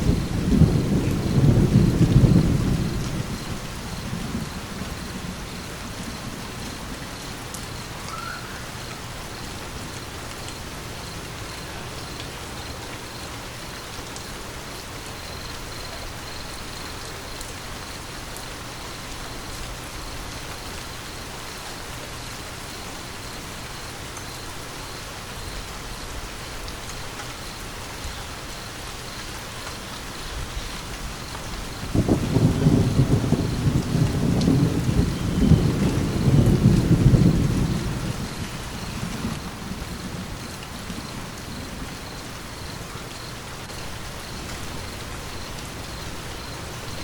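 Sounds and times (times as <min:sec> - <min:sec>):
low thunder rumble: 0:00.0 - 0:12.8, 0:30.3 - 0:43.0
steady rain falling: 0:00.0 - 0:47.0.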